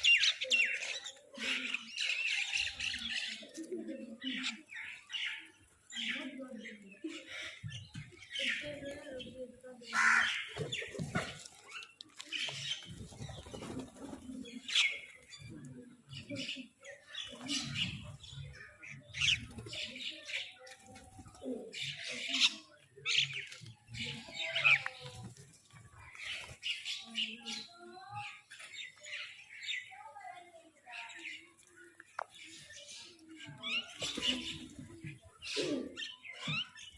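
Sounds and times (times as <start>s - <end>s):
crows calling harshly: 9.9s - 10.6s.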